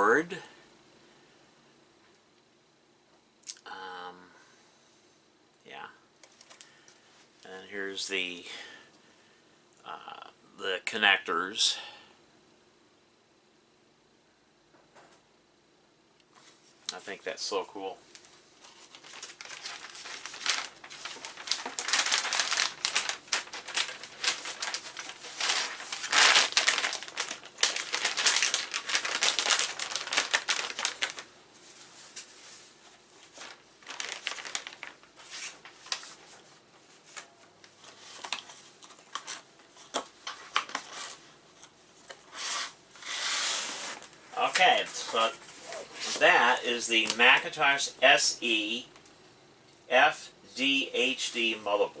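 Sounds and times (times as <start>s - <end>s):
plastic packaging crinkling: 18.1s - 47.5s.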